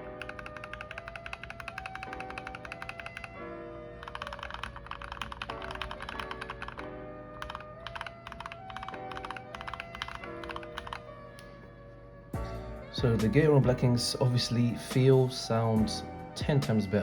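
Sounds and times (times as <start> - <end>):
fast typing on keyboard: 0.0 - 3.4, 4.0 - 11.0
background music: 0.0 - 17.0.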